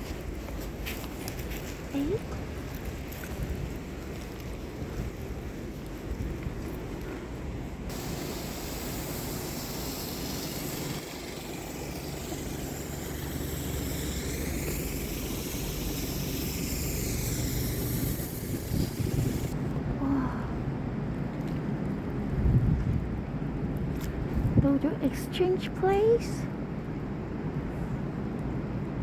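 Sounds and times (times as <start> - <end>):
vehicle noise hiss: 0.0 - 29.0
wind rumbling on microphone: 0.0 - 29.0.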